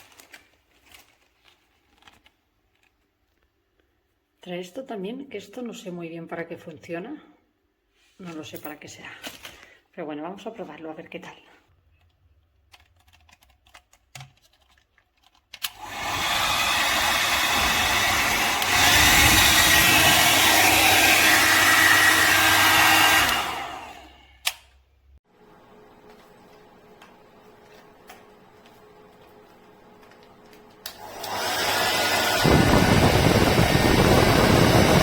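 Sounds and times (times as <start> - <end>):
hair dryer running: 15.7 - 24.4, 25.6 - 35.0.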